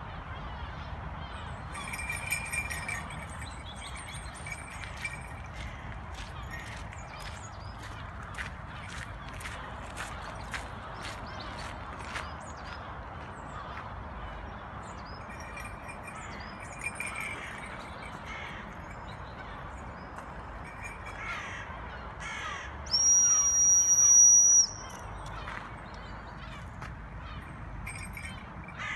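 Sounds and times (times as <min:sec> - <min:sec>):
harsh caw-like bird calls: 0:16.2 - 0:19.7, 0:20.9 - 0:23.0.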